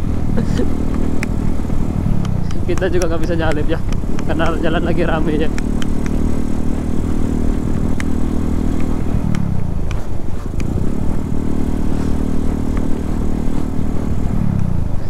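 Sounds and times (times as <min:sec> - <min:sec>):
motorcycle engine running: 0:00.0 - 0:15.0.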